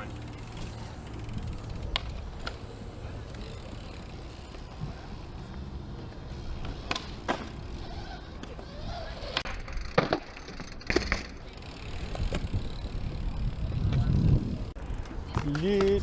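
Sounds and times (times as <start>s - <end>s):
tyres rolling on concrete: 0.0s - 10.8s
bike freewheel hub ticking: 0.0s - 16.0s.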